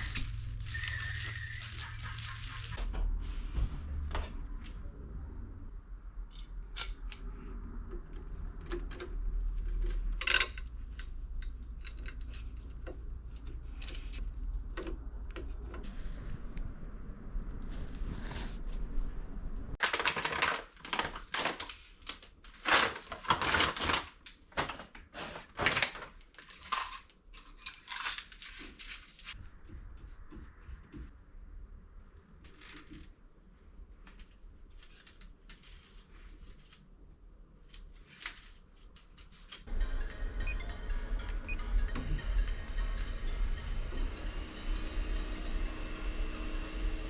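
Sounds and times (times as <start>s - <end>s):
hard parts clicking and knocking: 6.2s - 15.9s
music: 39.7s - 47.0s.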